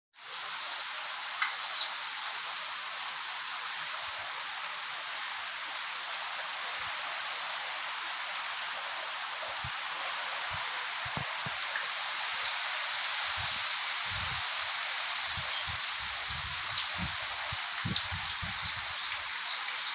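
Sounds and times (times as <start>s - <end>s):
heavy rain falling: 0.2s - 19.9s.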